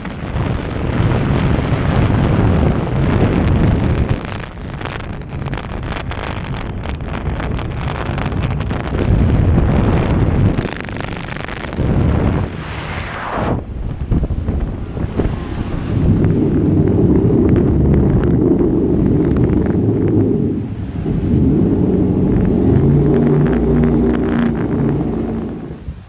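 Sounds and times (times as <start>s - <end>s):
wind buffeting microphone: 0.0s - 26.0s
boat engine: 14.4s - 26.0s
water rushing: 25.0s - 26.0s.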